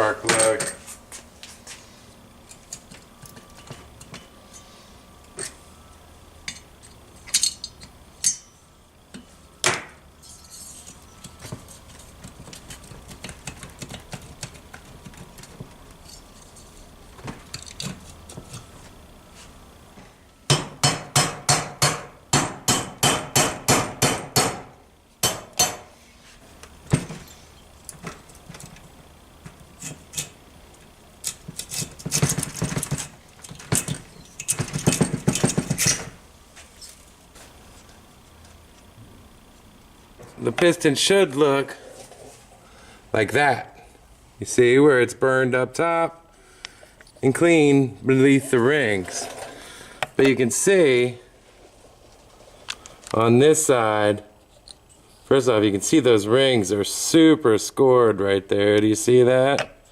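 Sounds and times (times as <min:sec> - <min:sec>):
hammer striking metal: 0:08.2 - 0:08.6, 0:20.5 - 0:25.9
scattered knocks and clicks: 0:11.2 - 0:15.8, 0:31.2 - 0:36.1.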